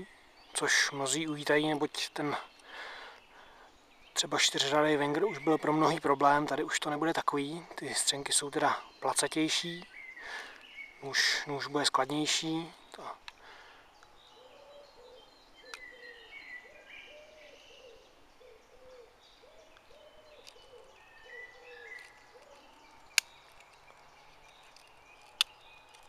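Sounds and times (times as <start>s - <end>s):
high bird chirps: 8.8s - 26.0s
bird hooting or cooing: 14.4s - 22.8s
sharp clicks: 23.1s - 23.9s.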